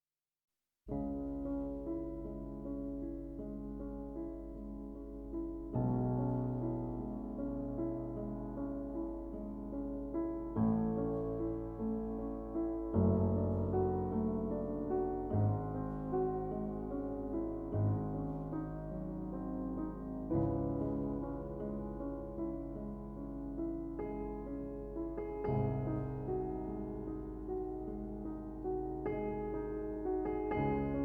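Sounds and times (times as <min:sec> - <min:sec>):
slow soft piano music: 0:00.9 - 0:31.0.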